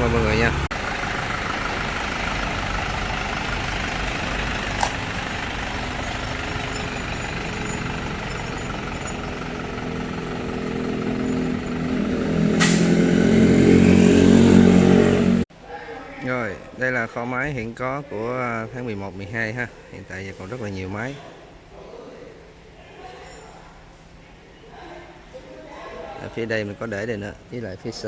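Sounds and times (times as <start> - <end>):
diesel engine idling: 0.0 - 14.7
short hiss: 12.6 - 12.9.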